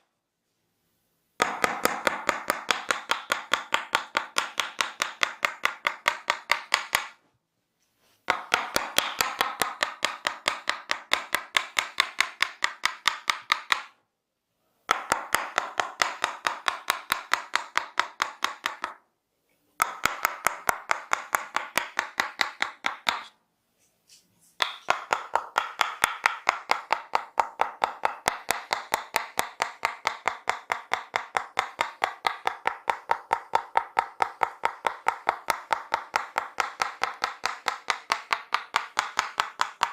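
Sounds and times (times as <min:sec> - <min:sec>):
hands striking in percussive massage: 0:01.4 - 0:07.2, 0:08.3 - 0:14.0, 0:14.9 - 0:19.0, 0:19.8 - 0:23.4, 0:24.6 - 0:39.9.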